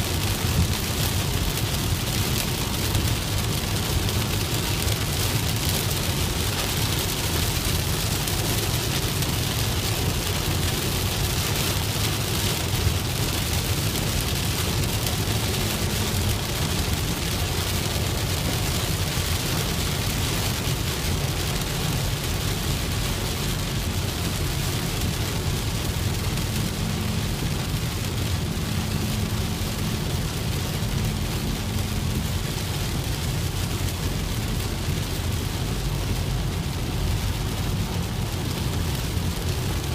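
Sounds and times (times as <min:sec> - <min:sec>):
rain hissing on car: 0:00.0 - 0:39.9
road and engine rumble: 0:00.0 - 0:39.9.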